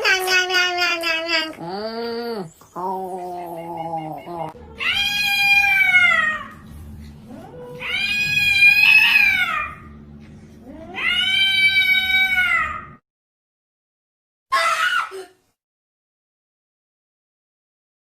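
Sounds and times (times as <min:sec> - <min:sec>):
cat meowing: 0:04.0 - 0:06.6, 0:07.4 - 0:09.8, 0:10.9 - 0:12.9.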